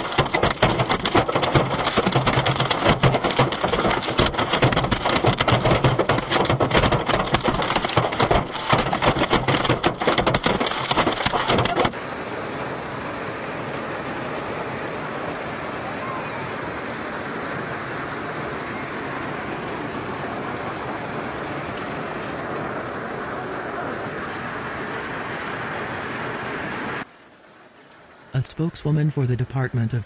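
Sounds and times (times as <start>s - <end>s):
hailstones clattering on hard surface: 0.0s - 12.0s.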